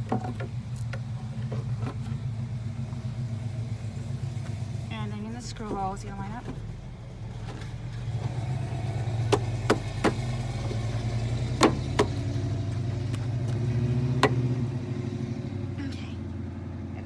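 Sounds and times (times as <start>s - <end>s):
low engine hum: 0.0s - 17.0s
plastic clicks and knocks: 11.5s - 12.3s.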